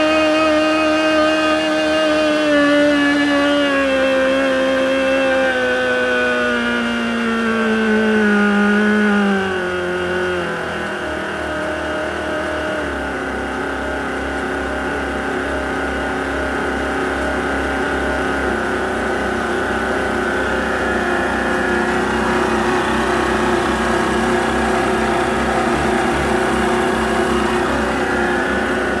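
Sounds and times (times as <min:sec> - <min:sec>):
supercharger whine: 0:00.0 - 0:29.0
marine diesel engine idling: 0:13.4 - 0:29.0.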